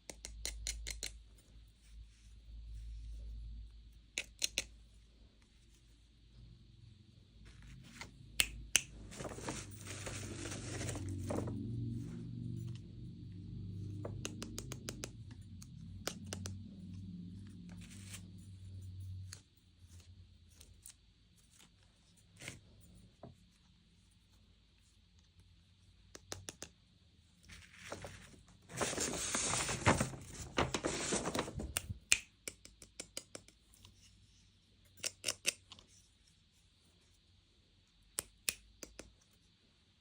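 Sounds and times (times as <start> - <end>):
packaging tearing and crinkling: 9.0 - 11.5, 27.9 - 31.8
packaging clicks and taps: 14.1 - 15.2.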